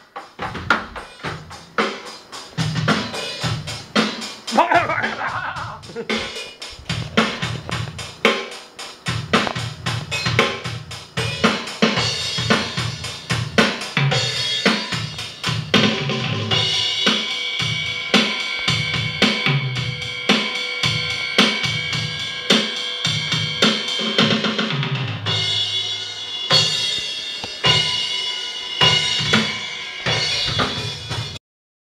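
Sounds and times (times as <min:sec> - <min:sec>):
snare drum: 0:00.0 - 0:19.6, 0:28.8 - 0:31.4
cymbals: 0:05.6 - 0:31.4.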